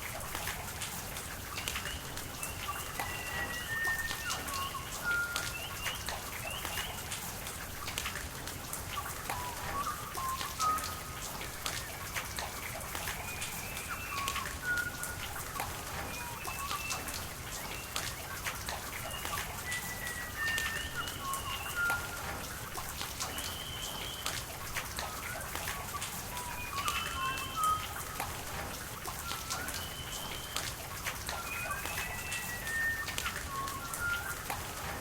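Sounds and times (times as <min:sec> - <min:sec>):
steady rain with ticking drops: 0:00.0 - 0:35.0
birds whistling: 0:01.6 - 0:07.0, 0:25.3 - 0:28.2.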